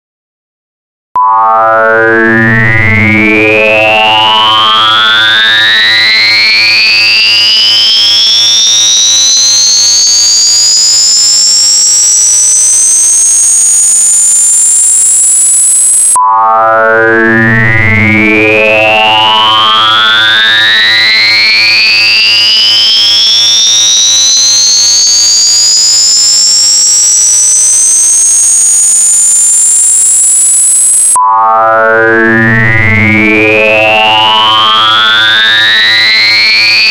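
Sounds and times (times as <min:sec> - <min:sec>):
electronic tones gliding upward: 0:08.3 - 0:17.0, 0:22.8 - 0:32.6.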